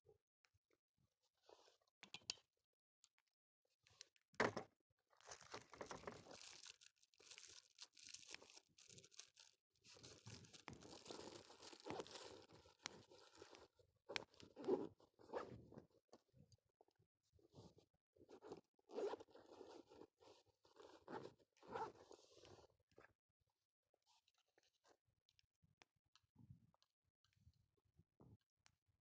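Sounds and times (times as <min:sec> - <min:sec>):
rustling and crinkling: 0:05.1 - 0:16.3.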